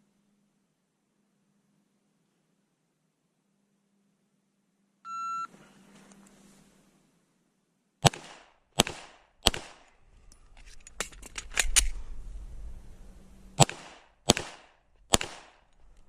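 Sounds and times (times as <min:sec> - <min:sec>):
pistol shots: 0:08.0 - 0:09.9, 0:13.6 - 0:15.7
metallic clicks of magazine change: 0:09.5 - 0:12.0.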